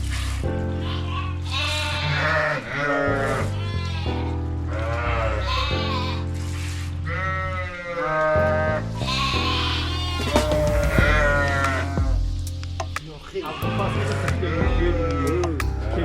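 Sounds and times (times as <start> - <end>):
sheep bleating: 0.1 - 12.2, 13.3 - 15.5
background music with chords: 8.2 - 16.0.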